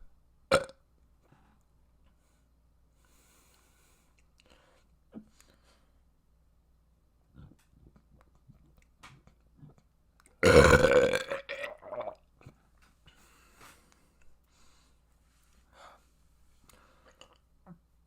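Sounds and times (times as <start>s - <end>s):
person burping: 0.5s - 0.8s, 10.4s - 12.2s.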